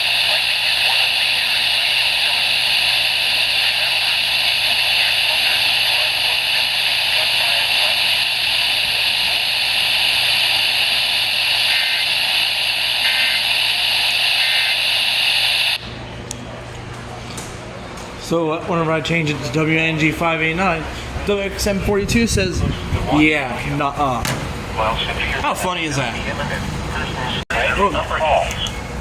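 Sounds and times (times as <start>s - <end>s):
radio static hissing: 0.0s - 15.9s, 24.8s - 28.7s.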